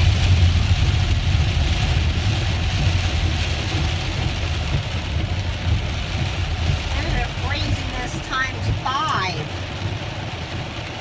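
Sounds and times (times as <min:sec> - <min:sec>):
car interior rumble: 0:00.0 - 0:11.0
rain hissing on wet road: 0:00.0 - 0:11.0.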